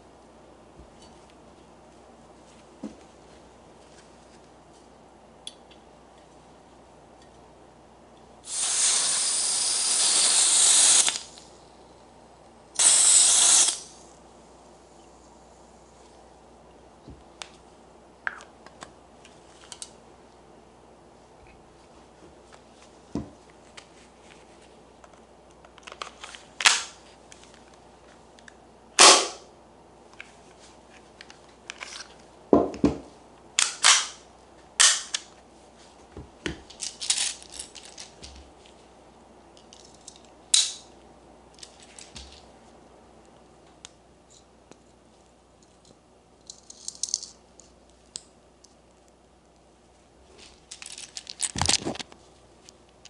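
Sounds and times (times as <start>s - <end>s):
airsoft pistol shots: 29.0s - 29.5s.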